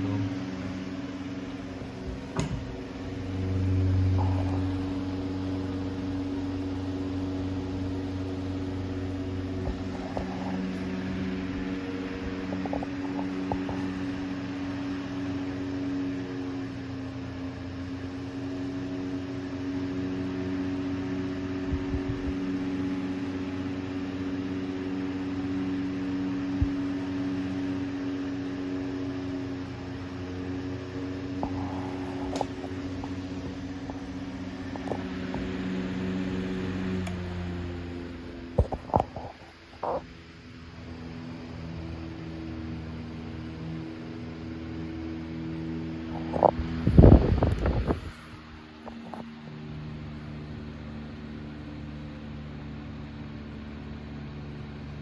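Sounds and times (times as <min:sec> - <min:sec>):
electric fan running: 0:00.0 - 0:55.0.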